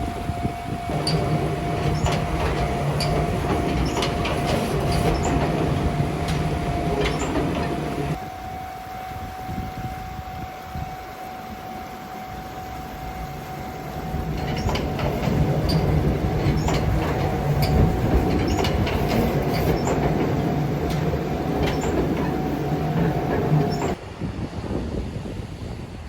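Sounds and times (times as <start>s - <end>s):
train rumbling on rails: 0.0s - 26.0s
wheels clicking over rail joints: 0.9s - 8.2s, 12.0s - 24.0s.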